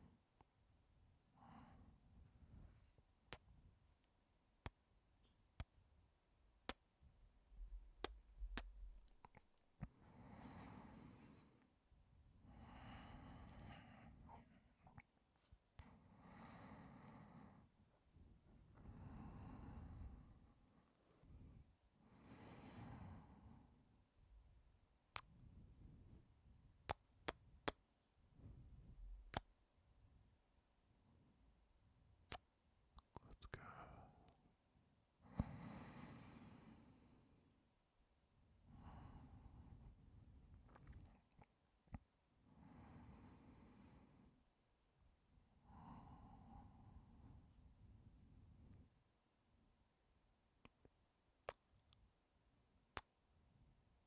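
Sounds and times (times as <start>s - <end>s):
soft breath: 1.3s - 3.0s, 7.4s - 11.8s, 12.4s - 23.9s, 33.5s - 34.5s, 35.2s - 37.6s, 38.7s - 41.2s, 42.4s - 44.4s, 45.6s - 48.9s
faint breathing: 9.9s - 11.7s, 12.5s - 14.7s, 15.8s - 17.7s, 21.2s - 23.8s, 35.2s - 37.4s, 42.5s - 44.4s.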